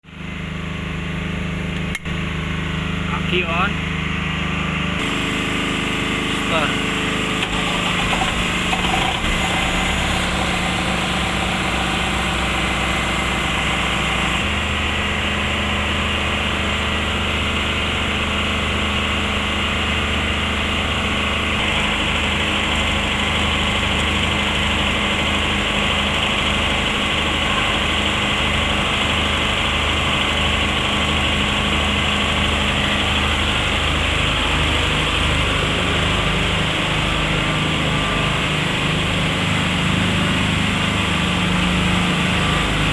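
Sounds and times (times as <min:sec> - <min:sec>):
diesel generator engine running: 0:00.0 - 0:42.9.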